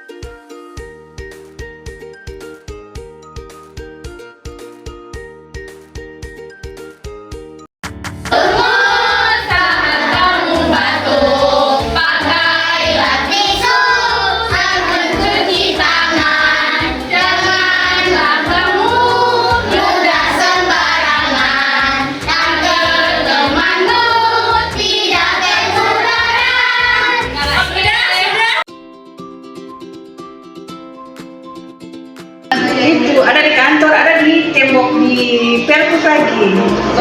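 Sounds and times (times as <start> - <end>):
music: 0.0 - 37.0
children singing: 8.3 - 28.6.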